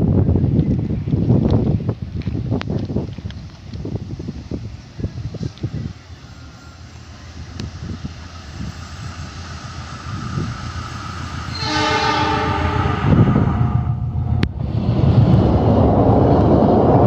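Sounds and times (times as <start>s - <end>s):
diesel locomotive approaching: 0.0s - 17.0s
wind buffeting microphone: 0.0s - 17.0s
train horn chord: 11.5s - 13.6s.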